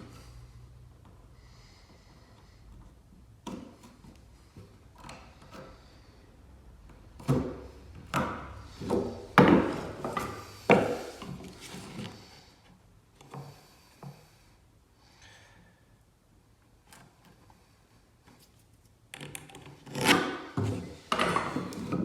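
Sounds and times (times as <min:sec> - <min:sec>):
wooden boards knocking and scraping: 0:07.2 - 0:12.0.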